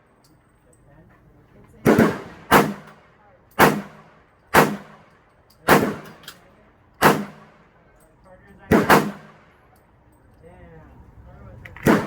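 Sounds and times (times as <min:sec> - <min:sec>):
pistol shots with echo: 0:01.8 - 0:06.4, 0:07.0 - 0:07.7, 0:08.7 - 0:09.6.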